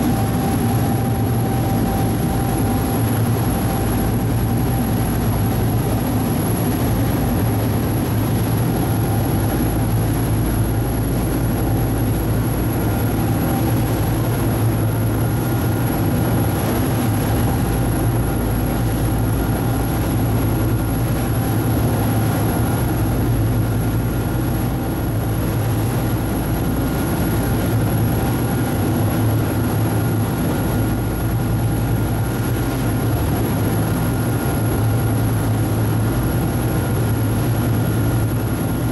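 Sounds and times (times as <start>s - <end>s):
boat engine droning: 0.0s - 38.9s.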